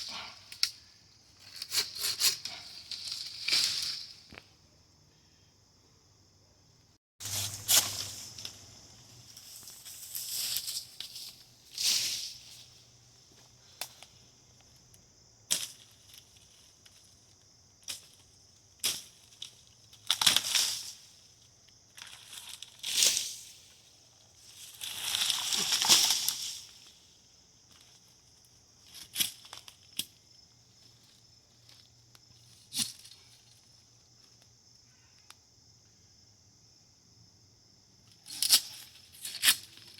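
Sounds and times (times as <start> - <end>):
twigs and branches snapping: 17.8 - 21.0.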